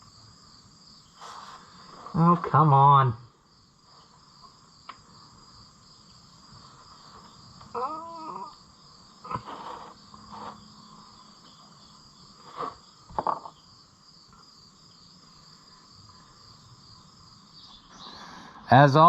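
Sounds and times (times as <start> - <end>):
insects chirping: 0.0 - 19.0.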